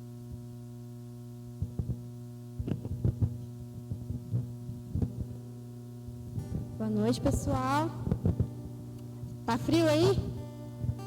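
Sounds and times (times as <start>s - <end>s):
low hum from sound system: 0.0s - 11.0s
soft thumps and knocks: 1.6s - 2.0s, 2.6s - 5.4s.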